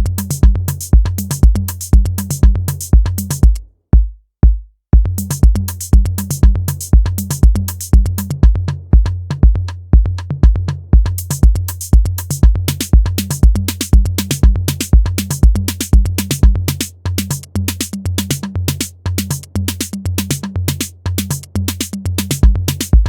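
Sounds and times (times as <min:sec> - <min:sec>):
crisp hi-hats: 0:00.0 - 0:03.6, 0:05.1 - 0:09.8, 0:10.7 - 0:23.0
booming kick drum: 0:00.0 - 0:16.8, 0:22.2 - 0:23.0.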